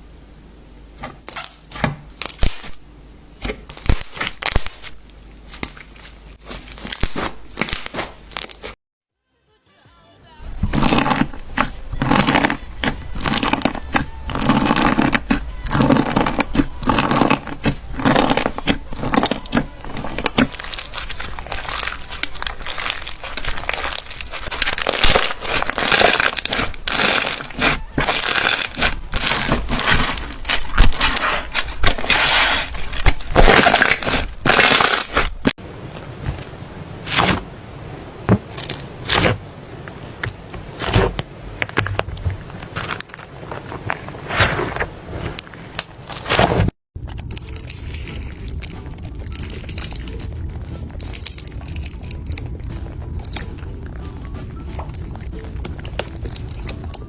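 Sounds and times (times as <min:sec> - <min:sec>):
slime crackling and popping: 0:02.2 - 0:02.8, 0:03.6 - 0:08.7, 0:10.5 - 0:36.4, 0:45.8 - 0:57.0.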